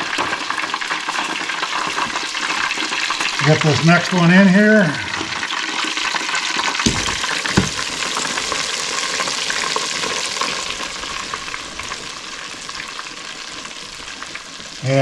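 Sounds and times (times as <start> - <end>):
hot oil sizzling in a fryer: 0.0 - 15.0
dull knocks: 6.9 - 8.0.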